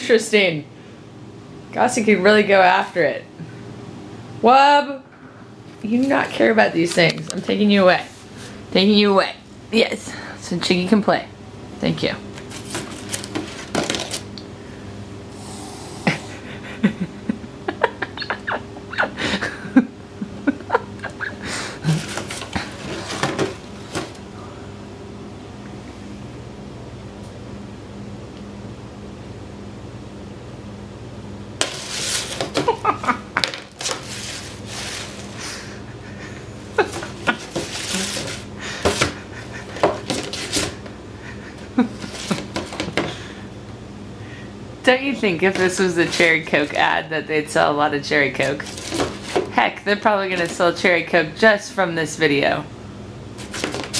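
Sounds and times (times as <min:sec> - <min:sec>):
faint steady hum: 0:00.0 - 0:53.9
cat batting ice in cardboard box: 0:31.6 - 0:32.7.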